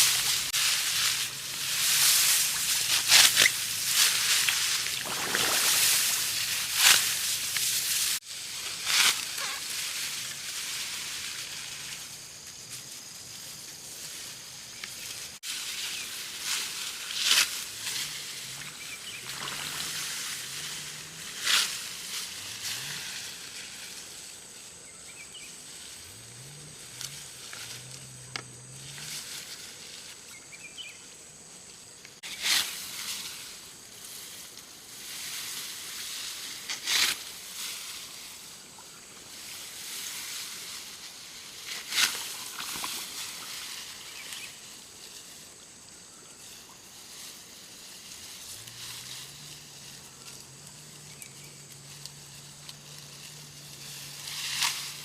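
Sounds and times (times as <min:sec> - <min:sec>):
loud splashes: 0:04.2 - 0:07.2
water sloshing: 0:04.4 - 0:06.8.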